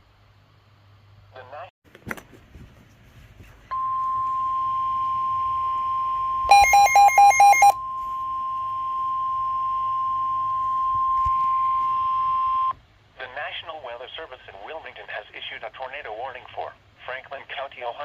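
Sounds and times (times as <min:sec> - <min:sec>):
beeps alternating two pitches: 0:03.7 - 0:12.7
steady warning alarm tone: 0:03.7 - 0:12.7.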